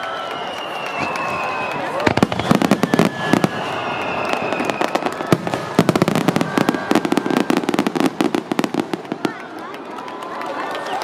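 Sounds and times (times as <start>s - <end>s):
high falling whistle: 0.0s - 5.1s
fireworks crackling and popping: 0.1s - 10.9s.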